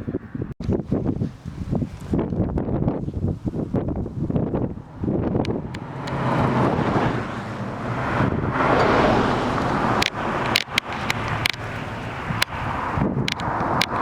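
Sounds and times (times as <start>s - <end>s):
wind on microphone: 0.0s - 14.0s
car passing by: 4.8s - 14.0s
sharp clicks: 9.6s - 12.6s, 13.2s - 14.0s.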